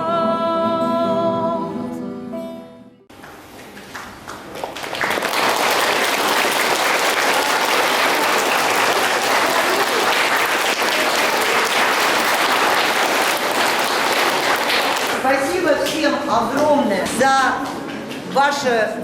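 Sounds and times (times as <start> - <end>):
audience applauding: 3.9 - 15.3.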